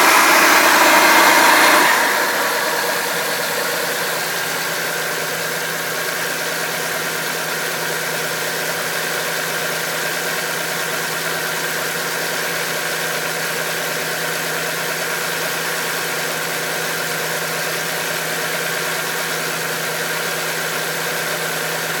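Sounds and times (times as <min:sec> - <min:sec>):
high-pitched tone: 0:00.0 - 0:05.6
car engine idling: 0:00.0 - 0:16.8.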